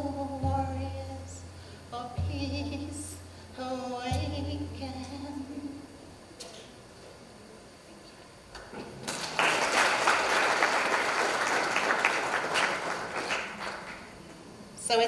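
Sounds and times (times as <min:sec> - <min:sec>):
audience applauding: 0:09.0 - 0:14.2.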